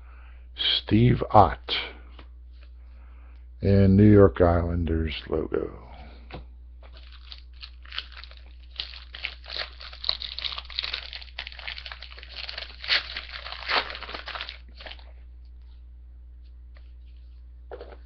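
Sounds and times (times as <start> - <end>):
wrapper crinkling and tearing: 6.8 - 15.1.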